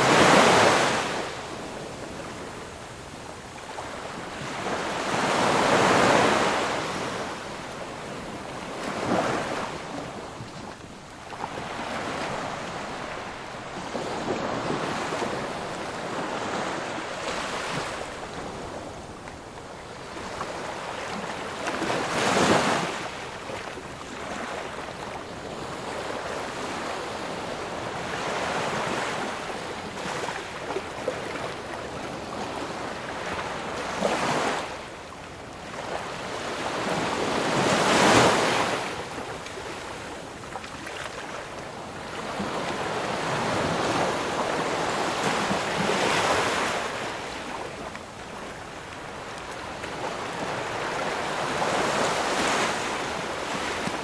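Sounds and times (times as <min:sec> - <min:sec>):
ocean waves breaking: 0:03.8 - 0:24.8, 0:35.6 - 0:54.0.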